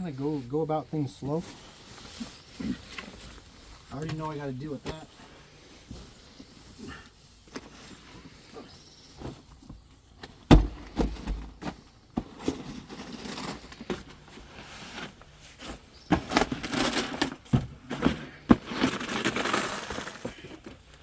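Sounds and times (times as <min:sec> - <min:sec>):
tarp rustling: 0:00.1 - 0:21.0
tarp knocks and thump: 0:10.2 - 0:14.2, 0:14.8 - 0:20.5.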